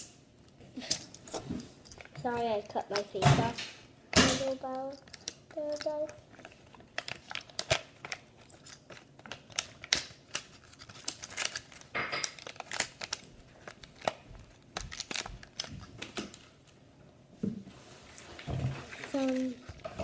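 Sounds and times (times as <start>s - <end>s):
toys clicking and tapping: 1.9s - 6.2s
crinkly rustling: 4.4s - 16.8s, 17.7s - 20.0s.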